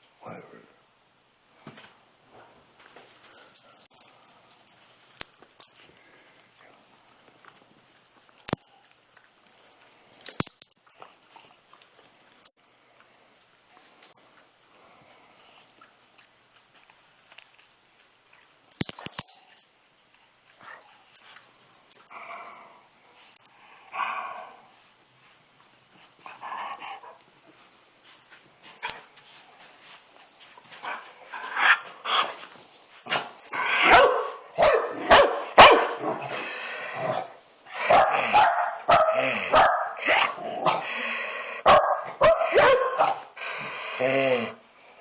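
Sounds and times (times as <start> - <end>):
dog barking: 33.1 - 36.3, 37.1 - 40.9, 41.6 - 43.2.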